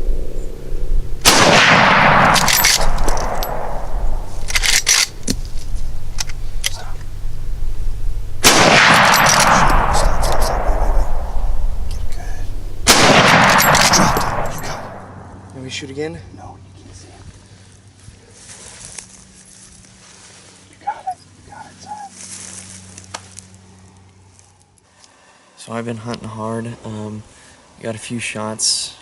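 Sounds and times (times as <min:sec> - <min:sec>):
rifle shots with echo: 0:01.2 - 0:05.1, 0:08.4 - 0:11.9, 0:12.8 - 0:15.5.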